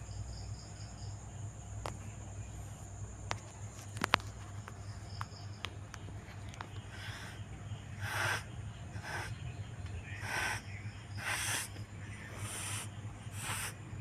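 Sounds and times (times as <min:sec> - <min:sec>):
steady low hum: 0:00.0 - 0:14.0
cat hissing: 0:06.8 - 0:14.0.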